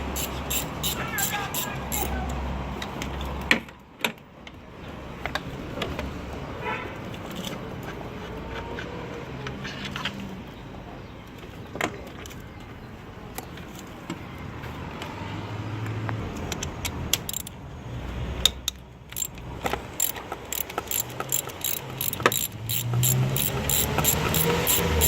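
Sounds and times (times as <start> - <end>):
metal tools clinking on engine parts: 0.0 - 2.3, 19.1 - 25.0
quick clicks: 0.0 - 2.4, 19.1 - 25.0.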